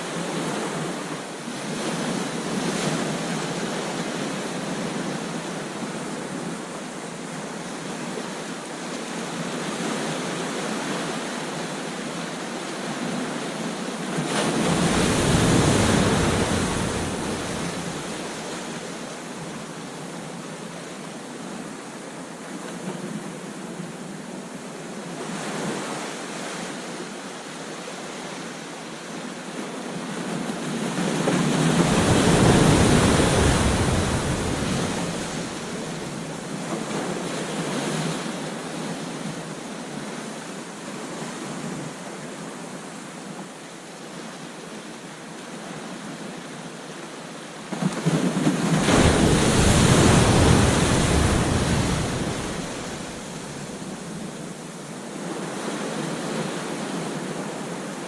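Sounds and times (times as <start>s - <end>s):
waves breaking loudly: 14.2s - 19.2s, 30.6s - 38.3s, 47.7s - 54.6s
ocean surf hissing: 31.6s - 36.5s, 48.8s - 54.6s.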